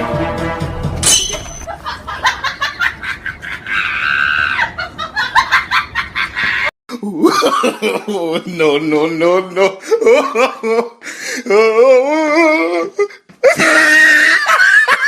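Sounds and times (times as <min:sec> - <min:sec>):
wavering voice: 0:11.5 - 0:13.0.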